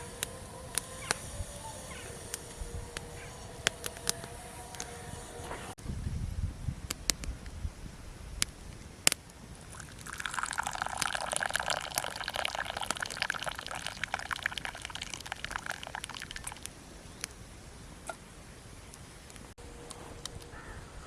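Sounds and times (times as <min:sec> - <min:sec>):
liquid pouring: 0:09.7 - 0:16.7.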